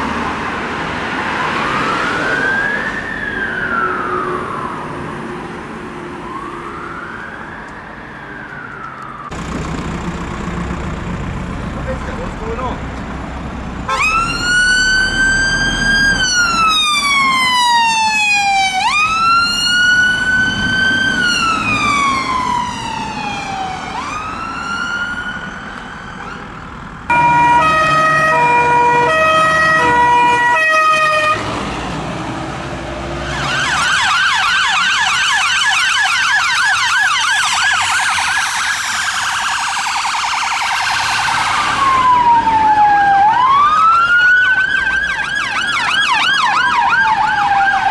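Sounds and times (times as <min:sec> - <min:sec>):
fire engine siren: 0:00.0 - 0:11.8, 0:13.8 - 0:47.9.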